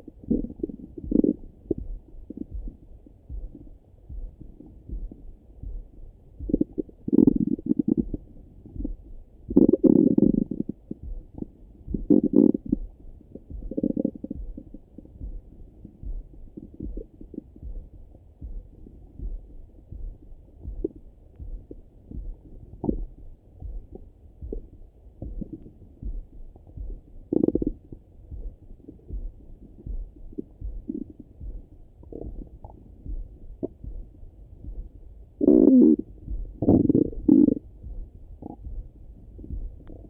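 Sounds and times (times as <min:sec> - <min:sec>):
soft low thumps: 0:00.0 - 0:40.0
stomach gurgles through stethoscope: 0:00.2 - 0:01.8, 0:06.5 - 0:08.8, 0:09.5 - 0:10.8, 0:11.4 - 0:12.8, 0:13.6 - 0:14.7, 0:27.3 - 0:27.8, 0:35.4 - 0:37.6.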